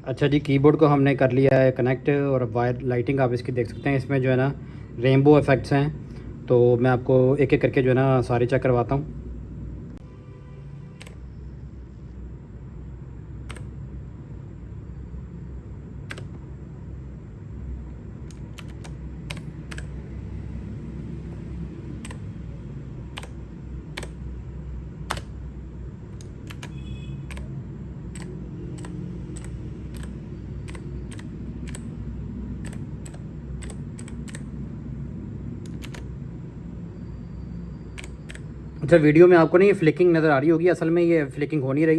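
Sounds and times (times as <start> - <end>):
steady low hum: 10.8 - 40.4
mechanical keyboard key clicks: 13.5 - 13.7, 16.1 - 16.5, 18.3 - 20.0, 22.0 - 22.4, 23.0 - 24.2, 25.1 - 25.4, 26.1 - 27.5, 28.1 - 32.0, 32.6 - 34.5, 35.6 - 36.2, 38.0 - 38.5.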